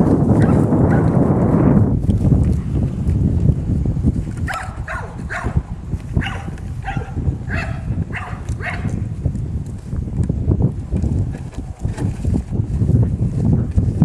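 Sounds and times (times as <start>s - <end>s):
steady low rumble: 0.0s - 14.0s
puppy yipping: 4.5s - 5.6s.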